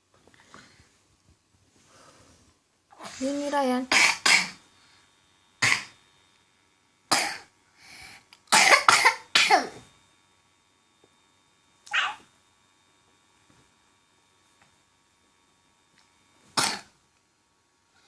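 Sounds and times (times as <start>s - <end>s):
child coughing: 3.9s - 4.6s, 5.6s - 6.0s, 7.1s - 7.5s, 8.5s - 9.8s, 16.6s - 16.9s.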